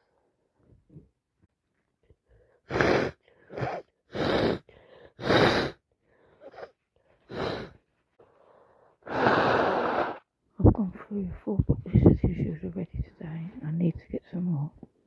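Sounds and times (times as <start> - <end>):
quick breaths: 2.2 - 10.2.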